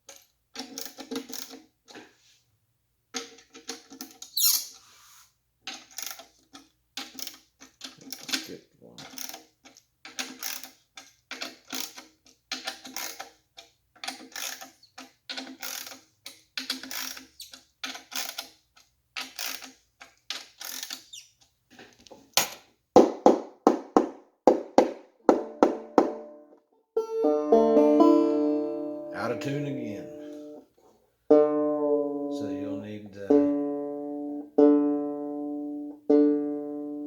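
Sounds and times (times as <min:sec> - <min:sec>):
metallic clicks of nuts turning: 0:00.0 - 0:02.0, 0:03.1 - 0:04.8, 0:05.6 - 0:22.6
banjo strumming: 0:25.3 - 0:30.6, 0:31.3 - 0:37.0
faint string ringing: 0:25.4 - 0:30.6, 0:31.3 - 0:37.0.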